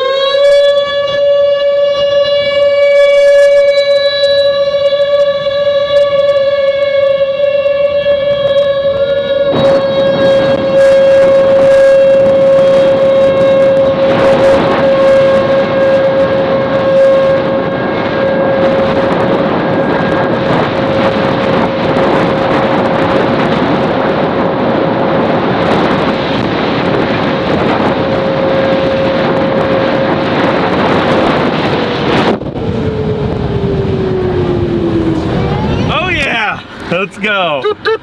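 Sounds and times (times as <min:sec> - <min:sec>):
outdoor warning siren tone: 0:00.0 - 0:21.9, 0:31.6 - 0:36.0
wind and road noise: 0:08.3 - 0:38.0.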